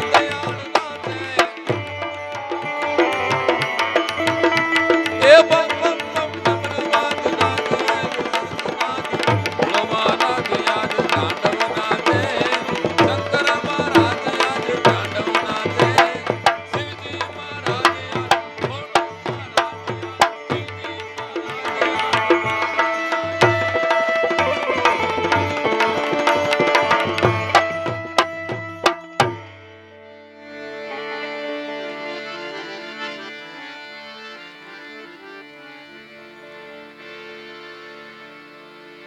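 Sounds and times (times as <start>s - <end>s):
tabla playing: 0.0s - 29.6s.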